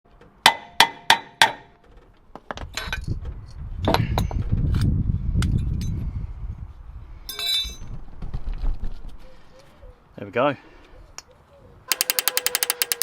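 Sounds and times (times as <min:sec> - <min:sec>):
scattered clicks: 0:11.9 - 0:13.0.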